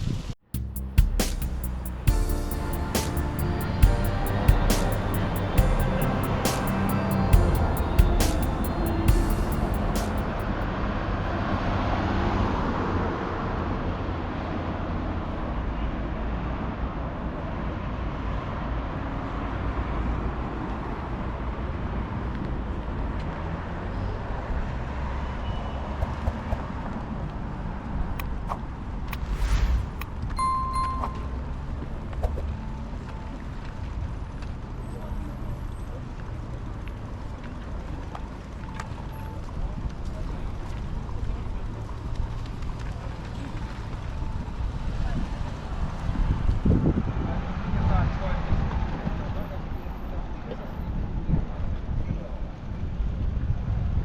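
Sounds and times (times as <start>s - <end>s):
road traffic rumble: 0.4s - 15.0s
short high beep: 0.8s - 10.6s, 29.2s - 31.5s.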